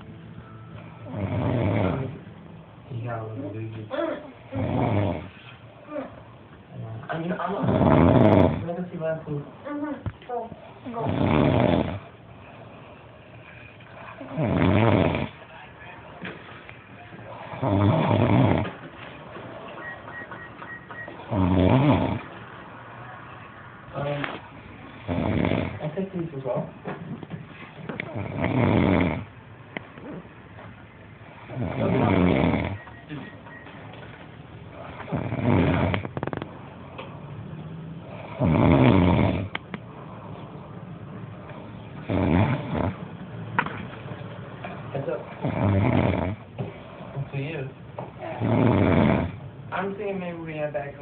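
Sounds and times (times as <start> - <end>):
person snoring: 1.0 - 2.2, 4.5 - 5.3, 7.6 - 8.7, 10.9 - 15.4, 17.3 - 18.8, 21.3 - 22.3, 25.0 - 25.8, 28.0 - 29.3, 31.4 - 32.8, 34.8 - 36.3, 38.0 - 39.6, 42.0 - 43.0, 45.4 - 47.1, 48.3 - 49.4.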